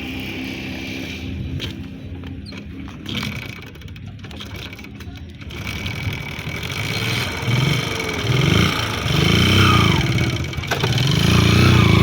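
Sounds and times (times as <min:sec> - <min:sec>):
engine revving: 0:05.4 - 0:12.0.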